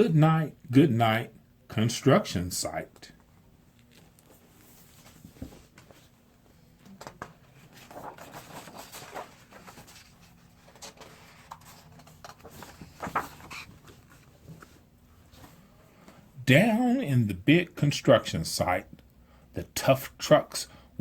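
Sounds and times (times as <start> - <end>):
paper pages rustling: 3.8 - 6.2, 6.9 - 15.6
soft knocks of book handling: 3.8 - 6.2.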